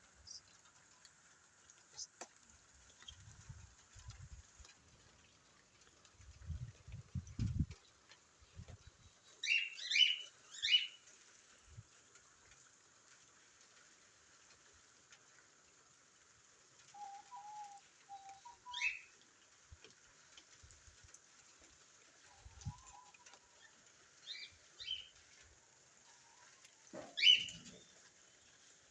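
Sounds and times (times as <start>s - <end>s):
bird chirps: 27.0s - 28.0s.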